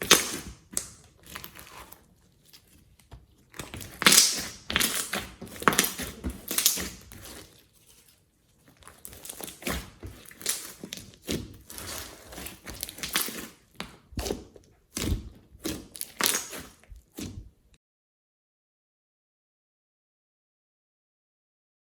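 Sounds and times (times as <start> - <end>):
slime squishing and popping: 0.0 - 1.9, 3.5 - 7.4, 8.8 - 17.5.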